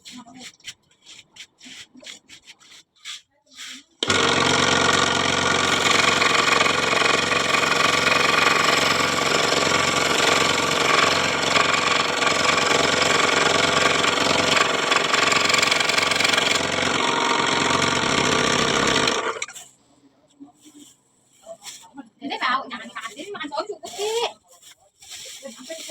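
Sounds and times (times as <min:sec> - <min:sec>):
power tool motor running: 0:04.0 - 0:19.4.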